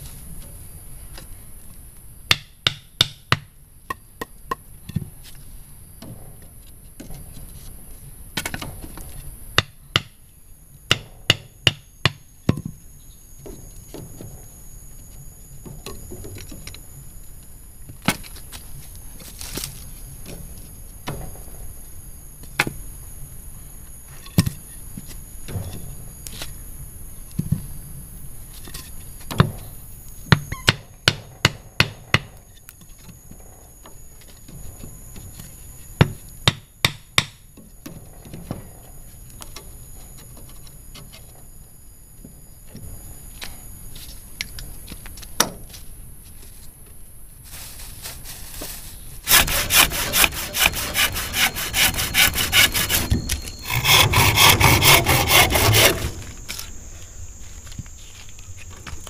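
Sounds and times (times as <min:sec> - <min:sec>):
tool striking wood: 0:02.3 - 0:04.6, 0:10.9 - 0:12.7, 0:30.4 - 0:32.4, 0:49.3 - 0:56.4.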